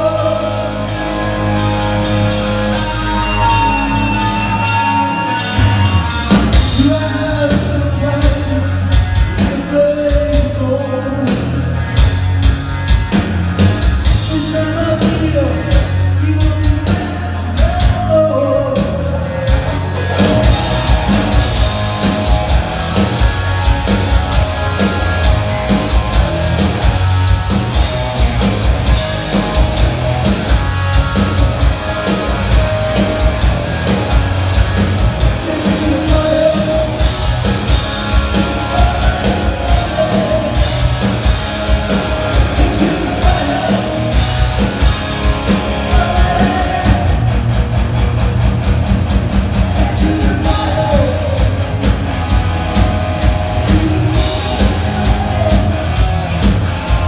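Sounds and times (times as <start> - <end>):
person singing lead vocal: 0.0 - 1.0, 3.2 - 11.6, 14.1 - 20.5, 35.2 - 37.2, 38.4 - 41.0, 42.3 - 44.3, 45.7 - 47.4, 49.8 - 51.8, 53.6 - 56.1
heavy metal band playing live: 0.0 - 57.0
drums hitting: 3.4 - 57.0.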